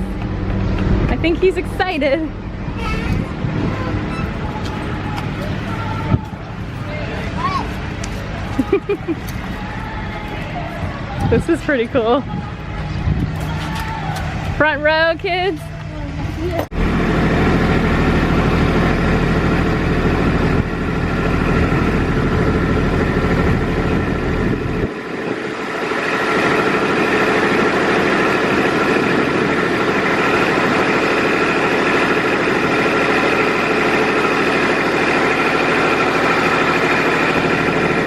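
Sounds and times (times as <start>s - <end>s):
engine idling: 0.0s - 13.6s, 14.2s - 38.0s
high steady hum: 0.0s - 38.0s.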